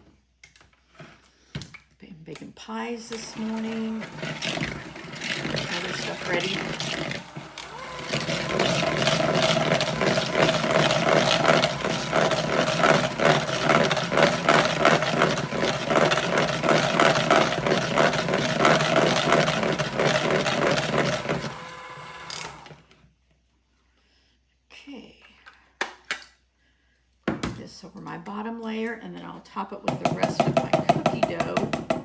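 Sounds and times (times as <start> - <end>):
electric mixer pulsing: 3.1 - 22.8.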